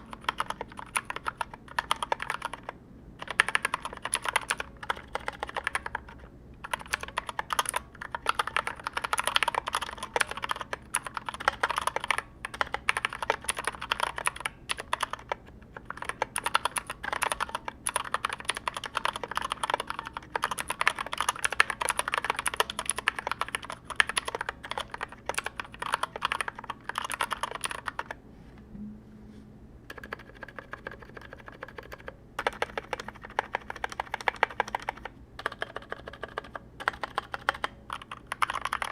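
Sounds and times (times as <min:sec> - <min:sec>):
mechanical keyboard keys clacking: 0:00.0 - 0:28.2, 0:29.9 - 0:38.9.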